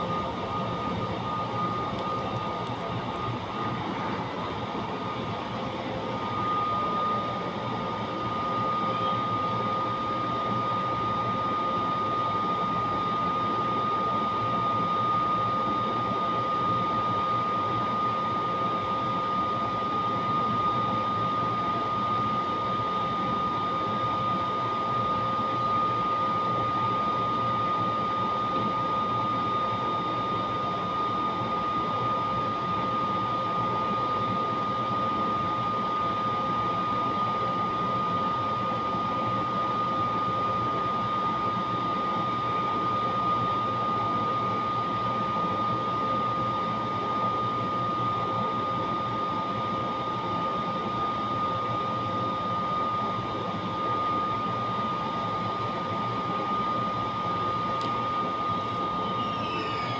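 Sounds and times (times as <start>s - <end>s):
constant high whine: 0.0s - 59.9s
train equipment hum and hiss: 57.5s - 59.9s.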